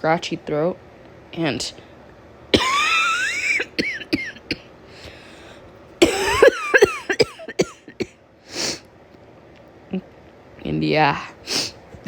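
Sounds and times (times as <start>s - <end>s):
woman coughing: 2.5s - 4.7s, 6.0s - 8.2s.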